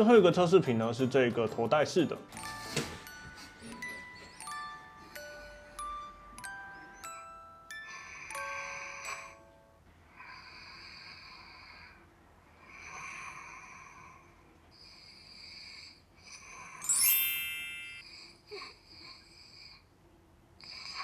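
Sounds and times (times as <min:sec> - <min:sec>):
chime jingle: 0:02.2 - 0:09.7, 0:16.8 - 0:18.3
rising run of chime tones: 0:16.8 - 0:18.2.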